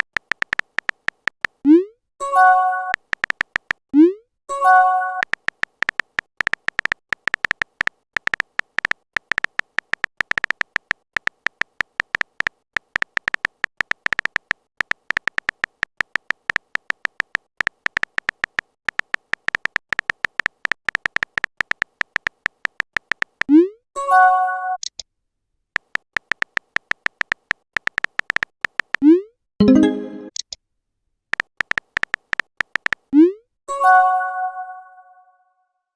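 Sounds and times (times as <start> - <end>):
phone keyboard typing clicks: 0.0 - 1.7, 2.5 - 3.8, 5.2 - 23.5, 25.8 - 29.0, 31.3 - 33.1.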